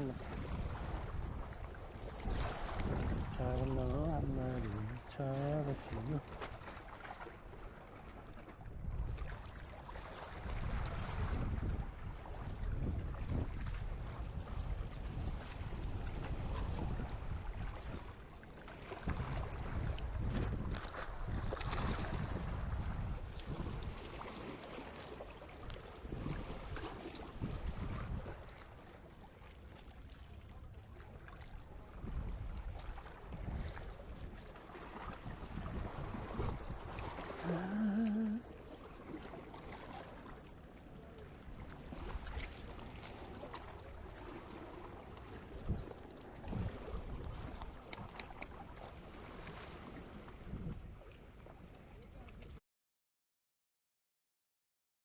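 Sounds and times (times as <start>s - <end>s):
wind buffeting microphone: 0.0s - 6.3s, 8.6s - 24.3s, 26.0s - 28.6s, 31.8s - 37.5s, 45.5s - 47.6s, 50.4s - 51.0s
surf on a beach: 0.0s - 7.8s, 8.8s - 28.8s, 31.7s - 45.8s.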